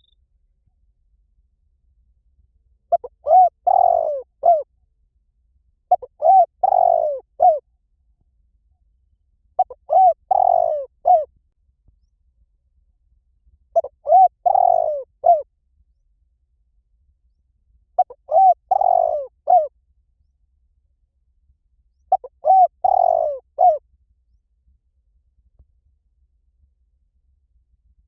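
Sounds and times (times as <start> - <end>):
dove cooing: 2.9 - 4.7, 5.9 - 7.6, 9.6 - 11.3, 13.8 - 15.4, 18.0 - 19.7, 22.1 - 23.8.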